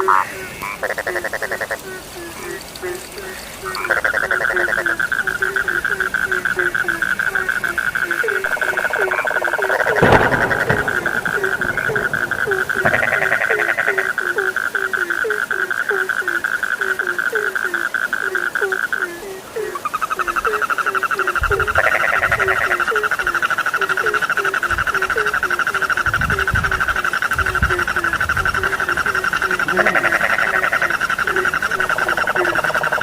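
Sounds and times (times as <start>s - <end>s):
frogs trilling: 0.0s - 33.0s
low frog croaks: 0.0s - 33.0s
low thuds: 8.4s - 14.3s.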